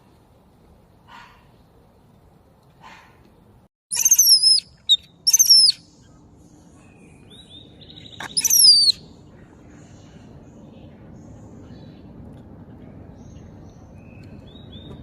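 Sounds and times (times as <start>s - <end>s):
baby monkey squealing: 3.9s - 5.8s, 8.2s - 9.0s.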